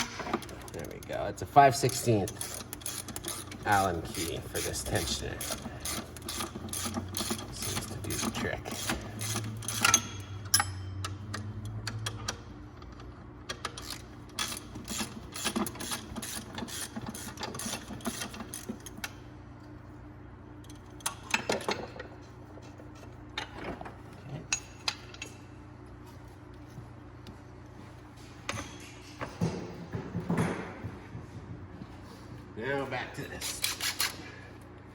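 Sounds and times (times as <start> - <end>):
ratchet wrench clicking: 1.9 - 12.4.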